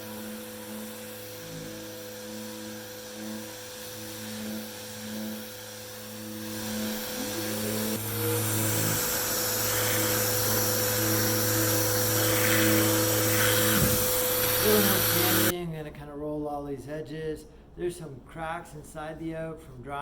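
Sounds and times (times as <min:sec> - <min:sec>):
power tool high whine: 0:00.0 - 0:15.5.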